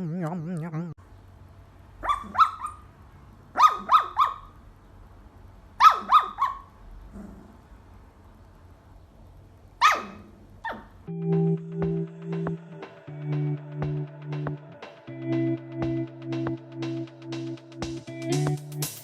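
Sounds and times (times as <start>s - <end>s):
small dog yipping: 2.0s - 2.8s, 3.6s - 4.6s, 5.8s - 6.7s, 9.8s - 11.0s.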